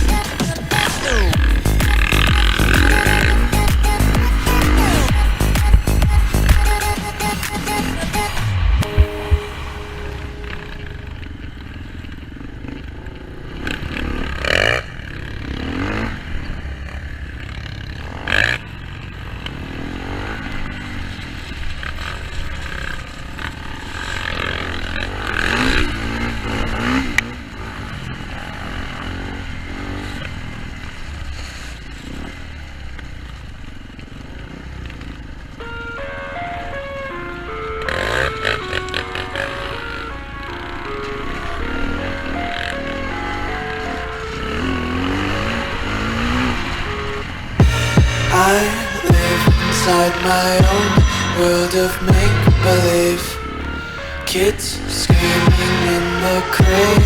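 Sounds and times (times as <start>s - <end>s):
motorcycle engine rumbling: 0.0s - 24.2s, 47.3s - 57.0s.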